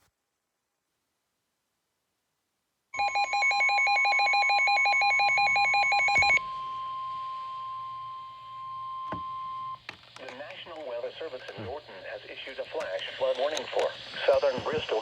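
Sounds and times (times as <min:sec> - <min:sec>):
steady alarm tone: 0:03.0 - 0:09.8.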